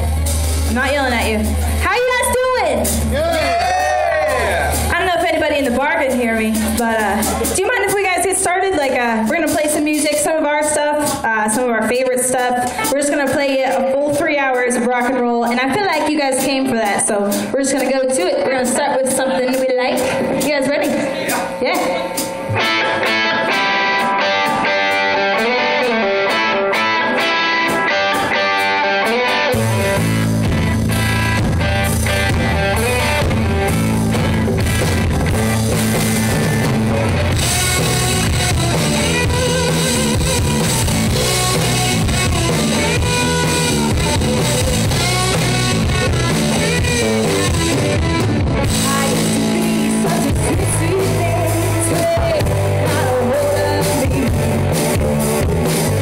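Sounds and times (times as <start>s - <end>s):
electric guitar: 0.0s - 56.0s
live rock band playing: 0.0s - 56.0s.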